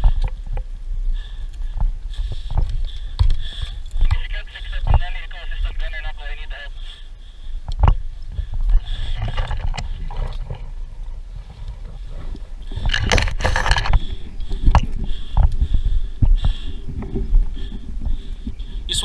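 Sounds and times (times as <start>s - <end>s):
rustling and scraping on microphone: 12.1s - 19.0s
wind rumble on microphone: 12.1s - 19.0s.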